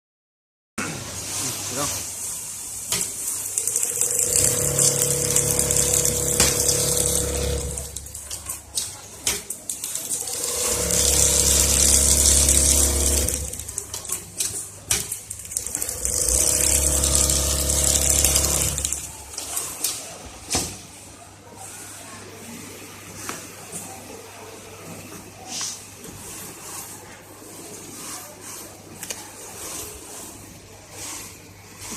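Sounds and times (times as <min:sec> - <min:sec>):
sewing machine running: 0:03.4 - 0:08.8, 0:09.8 - 0:14.5, 0:15.4 - 0:19.6.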